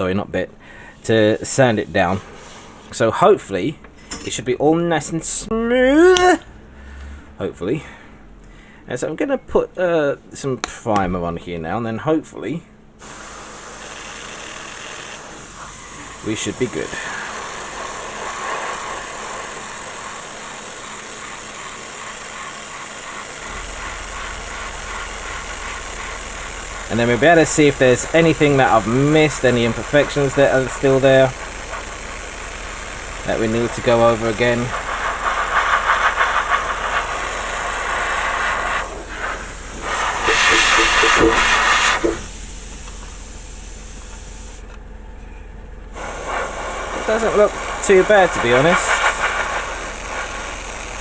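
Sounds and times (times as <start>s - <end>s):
airbrush hissing: 0.9s - 2.9s, 13.0s - 44.6s, 45.9s - 51.0s.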